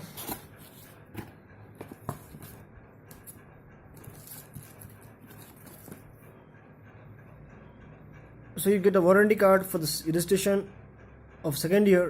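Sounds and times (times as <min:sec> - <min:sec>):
cardboard and paper rustling: 0:00.0 - 0:03.4, 0:04.0 - 0:06.1
low room hum: 0:00.0 - 0:12.0.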